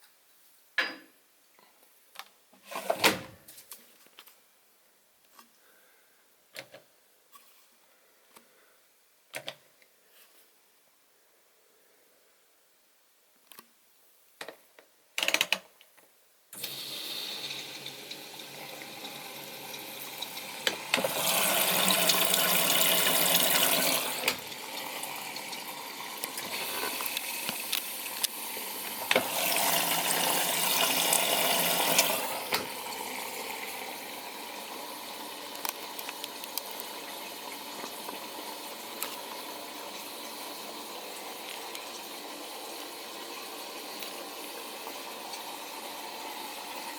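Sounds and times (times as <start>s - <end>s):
water filling washing machine: 16.6s - 46.9s.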